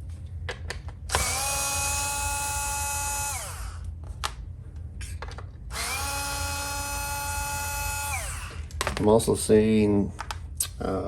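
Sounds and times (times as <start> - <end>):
power drill whining: 1.1 - 3.8, 5.7 - 8.7.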